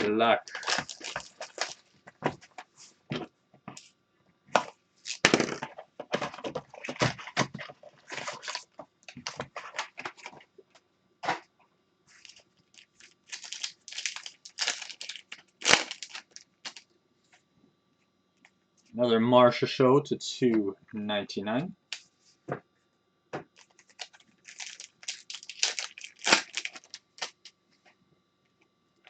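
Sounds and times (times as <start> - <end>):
plastic wrapping tearing and crinkling: 0.0 - 2.6, 4.6 - 10.3, 12.1 - 16.8, 23.6 - 27.5.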